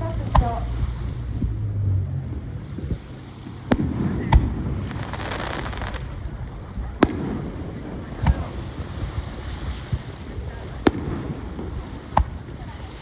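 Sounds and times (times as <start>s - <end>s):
fireworks bangs: 3.6s - 9.3s, 10.8s - 12.8s
fireworks crackle: 3.7s - 8.5s.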